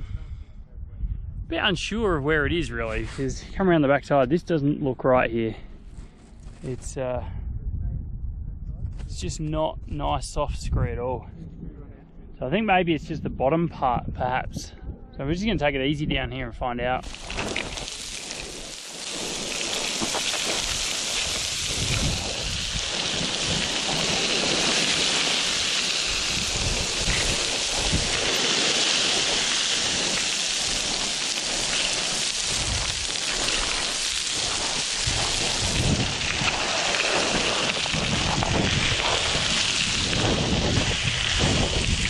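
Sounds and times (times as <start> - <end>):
boots sliding on loose scree: 17.0 - 22.2
low thumps of rock: 19.8 - 22.6.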